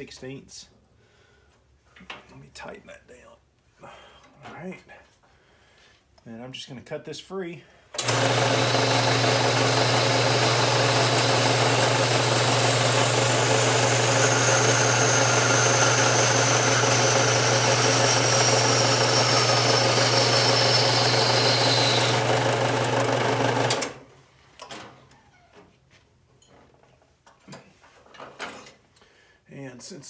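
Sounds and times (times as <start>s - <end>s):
metal-cutting bandsaw running: 8.0s - 24.0s.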